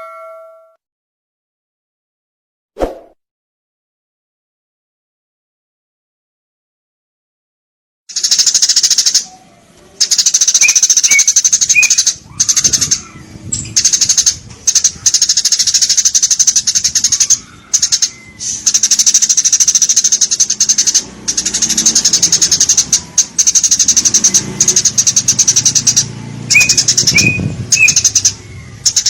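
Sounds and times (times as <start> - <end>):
sparrow chattering: 8.1 - 29.0.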